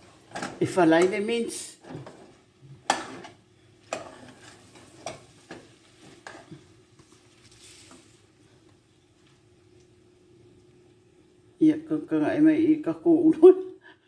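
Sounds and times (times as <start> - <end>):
spoon scraping a pan: 0.0 - 8.3.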